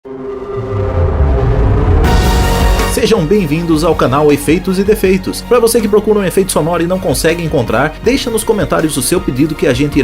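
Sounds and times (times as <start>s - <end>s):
low rumble: 0.0s - 3.2s
dark ominous music: 0.0s - 5.6s.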